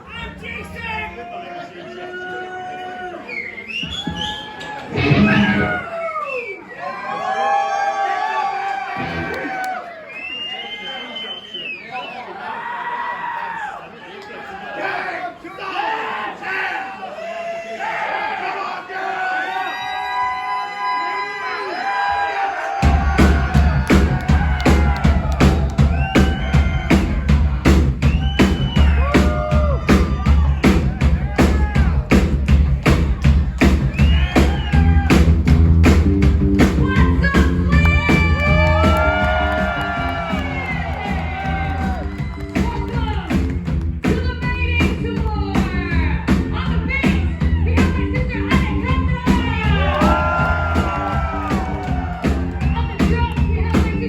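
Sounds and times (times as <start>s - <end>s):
live rock band playing: 4.9s - 5.9s, 9.0s - 9.4s, 22.8s - 54.0s.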